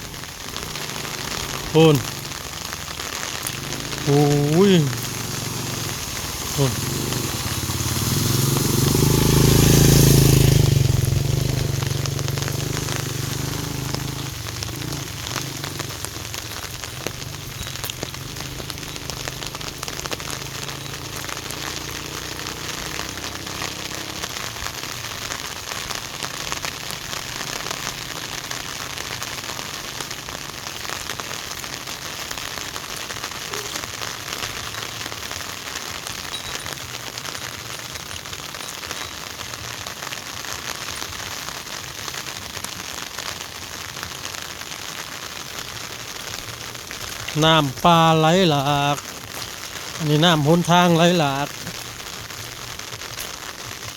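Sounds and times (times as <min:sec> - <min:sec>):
motorcycle engine passing by: 0:00.0 - 0:29.9
heavy rain falling: 0:00.0 - 0:53.9.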